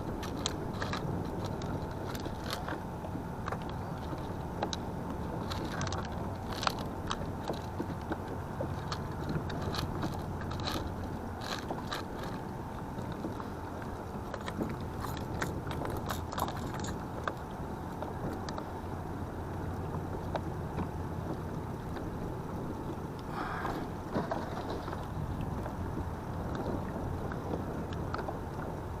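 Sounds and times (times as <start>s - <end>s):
small clicks and scrapes: 0.0s - 18.7s, 23.2s - 25.7s
low rumble of wind: 0.0s - 29.0s
water rumbling: 0.0s - 29.0s.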